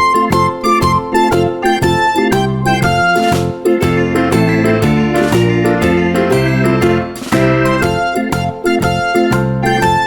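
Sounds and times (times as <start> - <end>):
bass line: 0.0 - 10.0
electric piano melody: 2.6 - 9.8.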